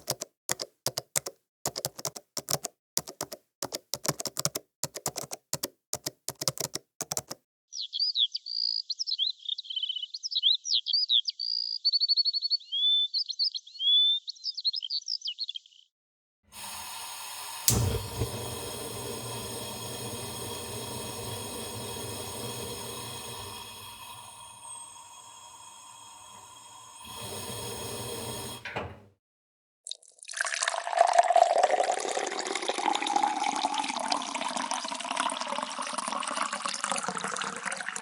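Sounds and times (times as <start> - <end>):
key clicks: 0.0 - 7.4
songbird singing: 7.7 - 15.9.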